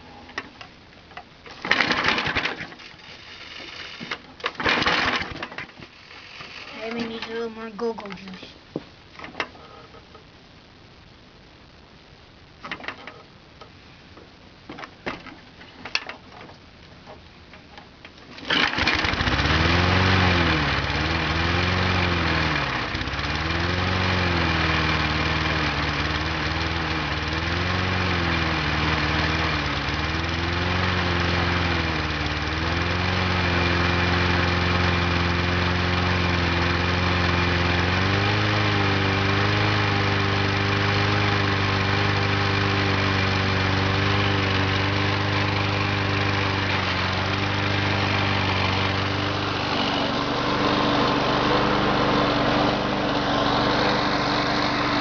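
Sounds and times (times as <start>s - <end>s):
lawn mower engine running: 1.5s - 7.4s, 18.3s - 55.0s.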